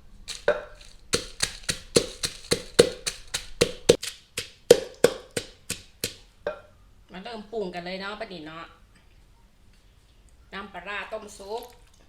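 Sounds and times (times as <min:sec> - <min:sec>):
pestle pounding in a mortar: 0:00.3 - 0:06.2.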